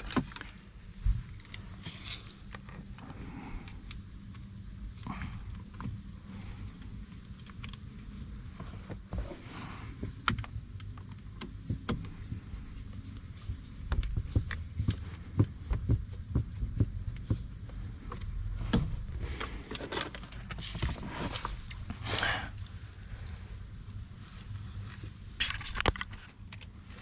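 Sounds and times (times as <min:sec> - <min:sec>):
scraping rustles: 0:11.7 - 0:23.5.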